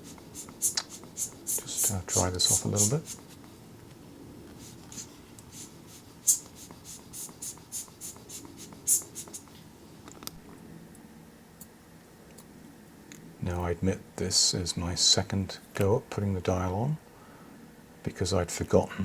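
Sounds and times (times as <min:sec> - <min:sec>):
soft hissing wiping strokes: 0:00.0 - 0:03.7, 0:04.4 - 0:09.7.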